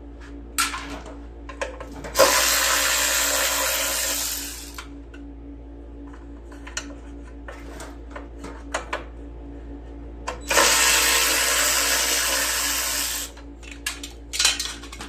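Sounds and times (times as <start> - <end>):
power drill running: 2.2 - 4.8, 10.4 - 13.4.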